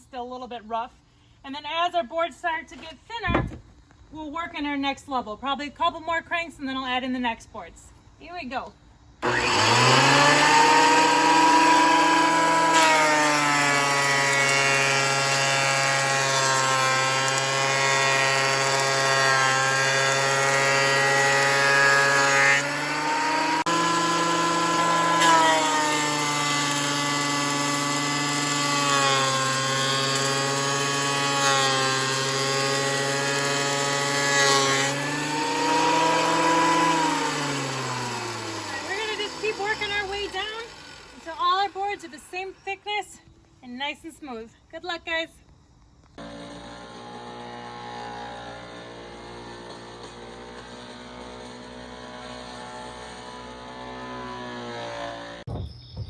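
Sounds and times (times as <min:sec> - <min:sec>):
thickness planer cutting board: 0:09.2 - 0:42.3.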